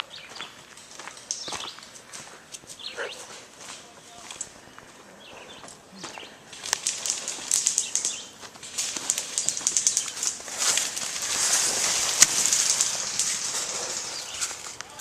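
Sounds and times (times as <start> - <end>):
rustling: 6.5 - 15.0.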